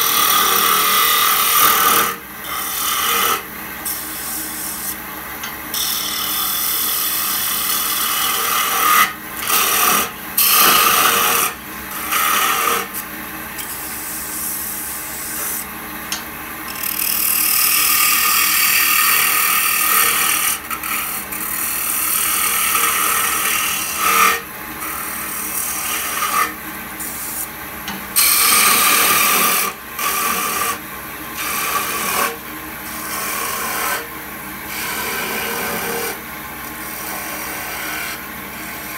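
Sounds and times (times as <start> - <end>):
turning tool cutting wood: 0.0 - 5.0, 5.7 - 15.7, 16.7 - 38.9
lathe motor hum: 16.7 - 34.0, 34.6 - 38.9.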